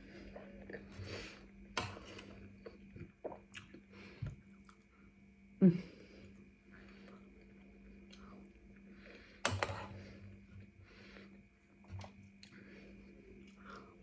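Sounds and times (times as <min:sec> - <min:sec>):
person chewing food: 0:00.0 - 0:05.2.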